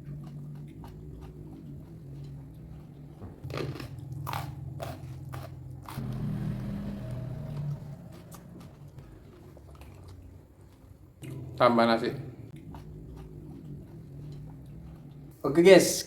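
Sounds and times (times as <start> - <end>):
crunchy chewing: 0.0 - 11.6, 12.2 - 15.4.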